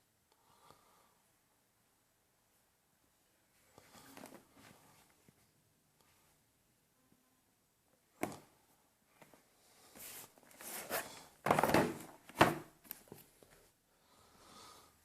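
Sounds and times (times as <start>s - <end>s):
packaging rustling and sliding: 10.0s - 13.3s.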